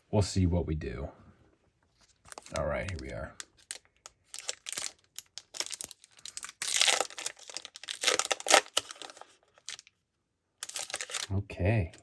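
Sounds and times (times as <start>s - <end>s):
foil wrapper tearing and crinkling: 2.2s - 9.9s, 10.6s - 11.3s.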